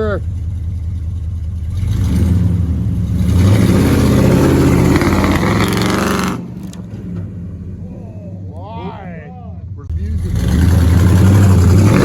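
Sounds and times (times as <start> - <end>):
truck engine revving hard: 1.7 - 8.0, 9.9 - 12.0.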